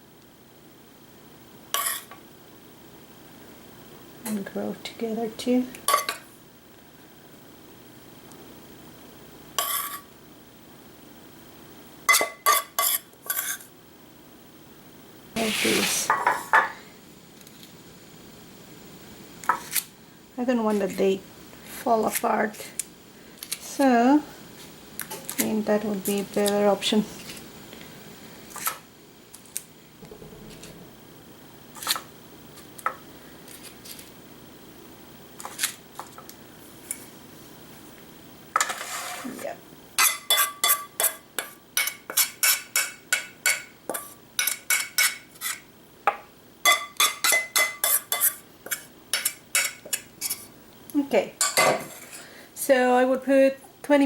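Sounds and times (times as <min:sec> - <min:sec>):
faint room hum: 0:00.0 - 0:54.0
metal spoon clinking on dishes: 0:46.6 - 0:48.4.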